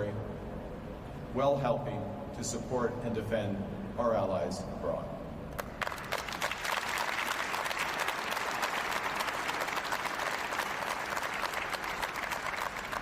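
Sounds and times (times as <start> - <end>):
audience applauding: 5.6 - 13.0.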